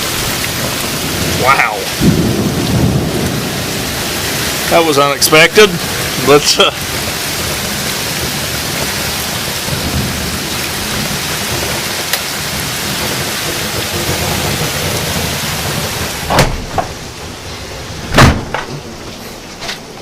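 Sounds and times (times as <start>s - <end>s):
heavy rain: 0.0s - 20.0s
strong wind: 0.0s - 20.0s
sharp loud thunder cracks: 1.0s - 8.9s.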